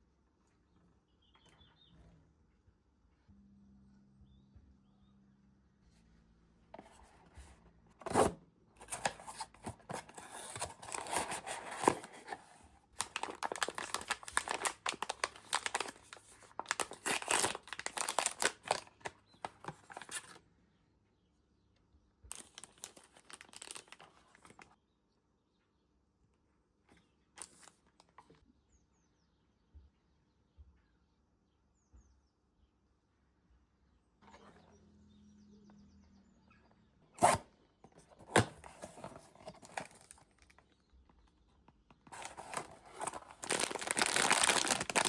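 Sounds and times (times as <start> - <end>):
packaging tearing and crinkling: 8.1 - 20.4, 22.3 - 24.7, 38.2 - 40.6, 42.1 - 45.0.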